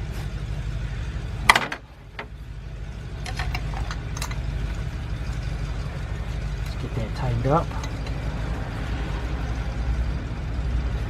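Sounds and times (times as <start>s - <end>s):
steady low hum: 0.0s - 11.0s
ratchet clicking: 3.2s - 4.8s, 7.7s - 8.3s.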